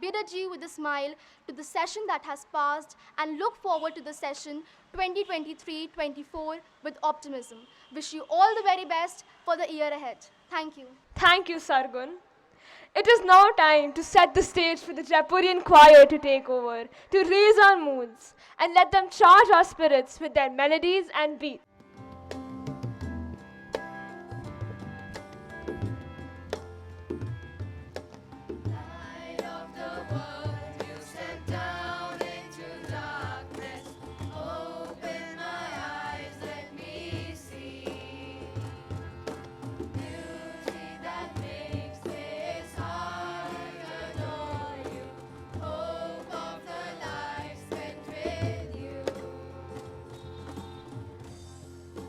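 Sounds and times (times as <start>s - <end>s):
instrumental accompaniment: 21.7s - 52.0s
steady drum beat: 27.1s - 49.4s
choir singing: 28.7s - 38.8s, 40.0s - 50.0s.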